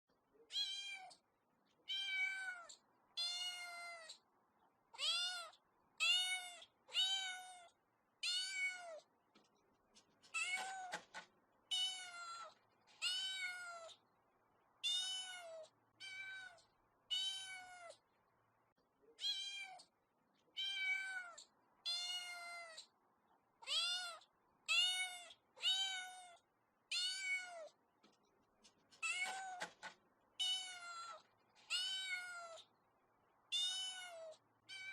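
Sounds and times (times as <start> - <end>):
kitten meowing: 0.5 - 1.2, 1.9 - 4.2, 5.0 - 9.0, 11.7 - 14.0, 14.8 - 18.0, 20.6 - 22.9, 23.6 - 27.7, 30.4 - 32.7, 33.5 - 34.9.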